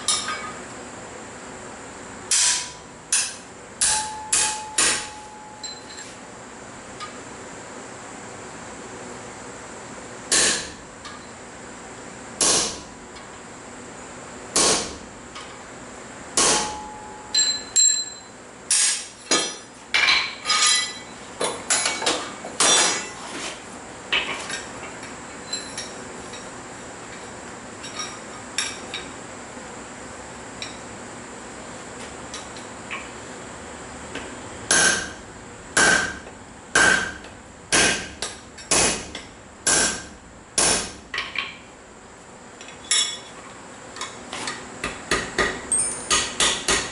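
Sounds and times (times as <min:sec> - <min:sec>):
hammer striking steel on anvil: 0:02.3 - 0:05.8, 0:10.3 - 0:10.8, 0:14.6 - 0:15.0, 0:16.4 - 0:21.0, 0:34.7 - 0:35.2, 0:35.8 - 0:41.0, 0:44.8 - 0:46.9.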